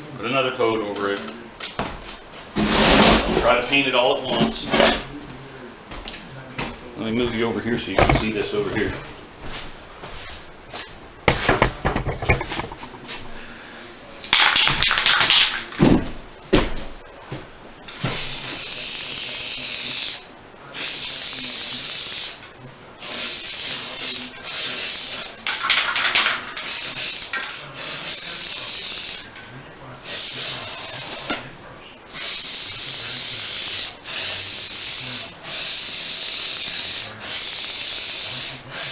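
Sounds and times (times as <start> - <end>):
clattering and knocking: 11.3 - 13.1
aerosol spray can spraying: 23.0 - 29.2, 32.2 - 38.9.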